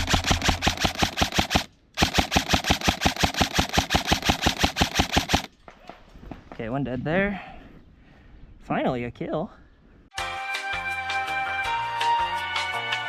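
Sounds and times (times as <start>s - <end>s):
airsoft gun firing full-auto: 0.0s - 5.5s.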